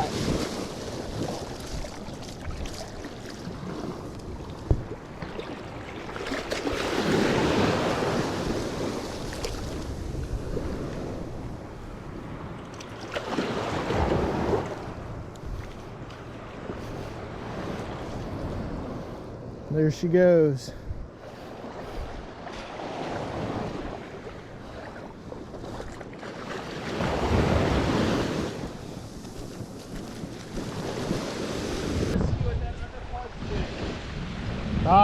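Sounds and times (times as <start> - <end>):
surf breaking on beach: 0.0 - 2.2, 4.7 - 11.4, 26.4 - 35.0
wind on microphone: 0.0 - 12.6, 20.7 - 26.1, 26.9 - 35.0.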